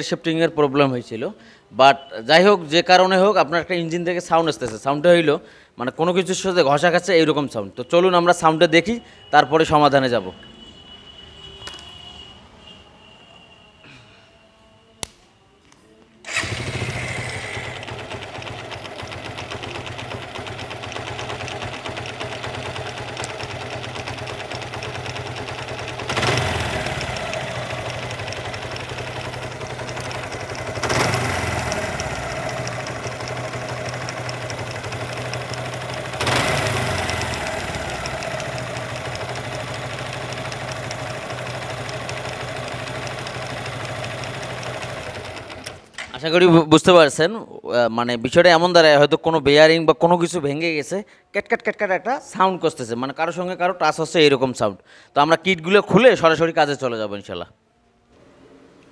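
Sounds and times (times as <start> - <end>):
motorcycle engine starting and idling: 16.2 - 46.4
motorcycle engine revving: 16.3 - 45.8
internal engine clatter: 16.4 - 45.8.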